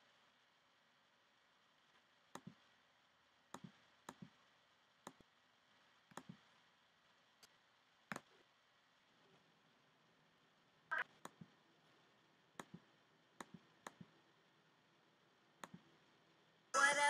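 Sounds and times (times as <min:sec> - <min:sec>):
faint sharp clicks: 0:02.3 - 0:02.7, 0:03.5 - 0:04.4, 0:05.0 - 0:05.3, 0:06.1 - 0:06.5, 0:07.4 - 0:08.4, 0:12.6 - 0:14.2, 0:15.6 - 0:15.9.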